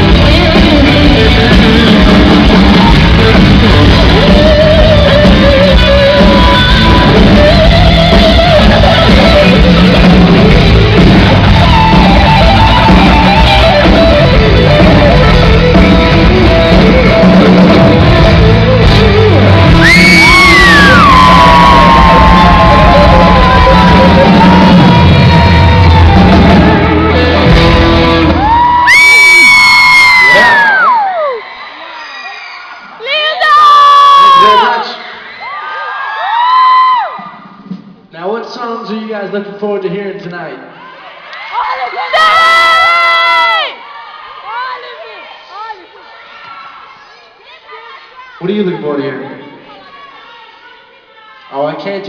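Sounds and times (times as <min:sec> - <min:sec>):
man singing: 0:00.0 - 0:09.6
live rock band playing: 0:00.0 - 0:29.5.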